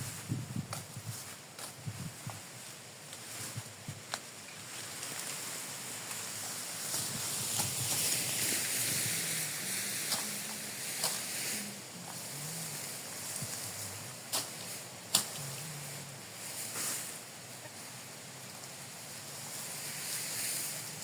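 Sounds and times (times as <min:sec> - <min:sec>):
strong wind blowing: 0:00.0 - 0:01.2, 0:01.8 - 0:02.4.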